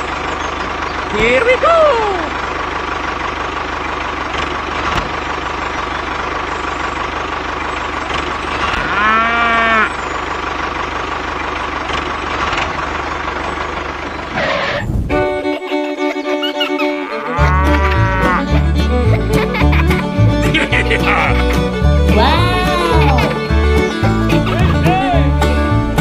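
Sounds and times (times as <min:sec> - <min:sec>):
engine running: 0:00.0 - 0:26.0
cow mooing: 0:08.6 - 0:10.0, 0:16.8 - 0:18.6.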